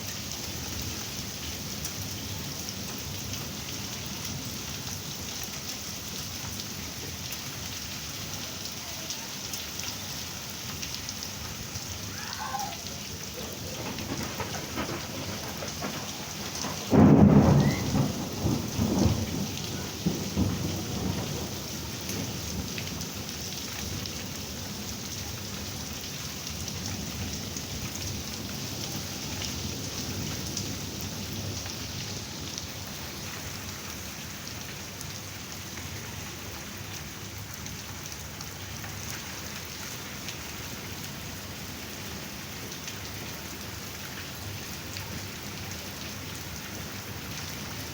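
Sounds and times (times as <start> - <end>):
heavy rain falling: 0.0 - 47.9
thunderclap rumbling: 12.1 - 23.3.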